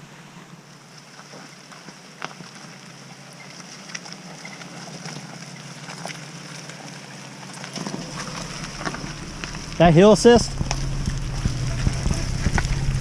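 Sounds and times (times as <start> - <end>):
engine running low: 0.0 - 13.0
light rain hiss: 0.0 - 13.0
raindrops ticking: 8.0 - 13.0.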